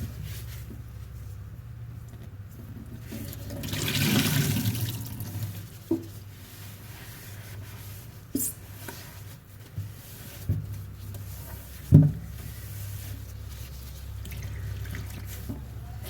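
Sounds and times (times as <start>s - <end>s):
water gushing and splashing: 3.2s - 5.6s.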